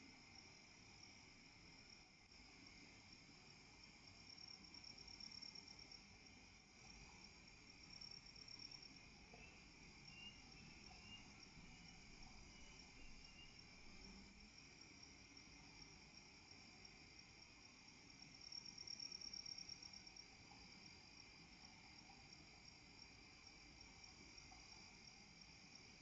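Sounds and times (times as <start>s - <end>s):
crickets and insects trilling: 0.0s - 26.0s.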